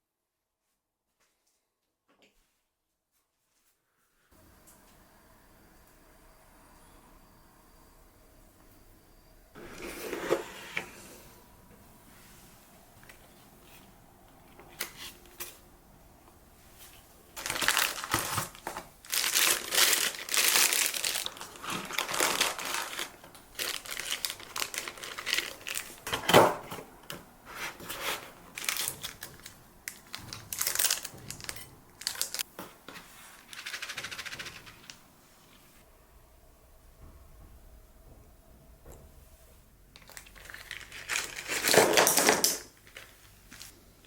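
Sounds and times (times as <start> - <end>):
packaging crinkling and rustling: 17.4 - 26.8, 27.6 - 32.5, 40.0 - 43.8.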